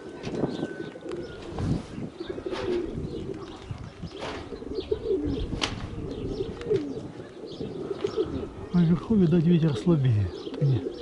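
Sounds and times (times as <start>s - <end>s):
wind rumble on microphone: 0.0s - 8.7s
pigeons cooing: 0.0s - 11.0s.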